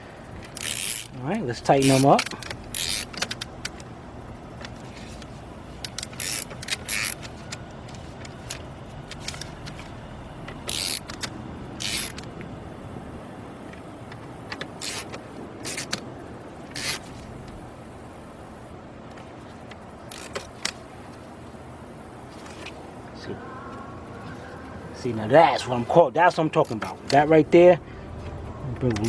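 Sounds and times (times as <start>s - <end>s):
hand ratchet clicking: 0.2s - 3.9s, 4.6s - 12.3s, 14.1s - 16.0s, 16.7s - 17.6s, 20.0s - 20.8s.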